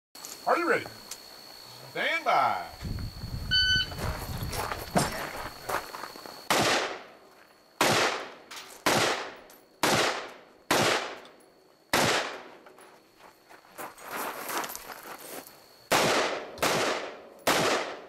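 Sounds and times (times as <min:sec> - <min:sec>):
shot timer beep: 0:03.5 - 0:03.9
rifle shots with echo: 0:06.5 - 0:07.0, 0:07.8 - 0:11.2, 0:11.9 - 0:12.5, 0:15.9 - 0:18.0.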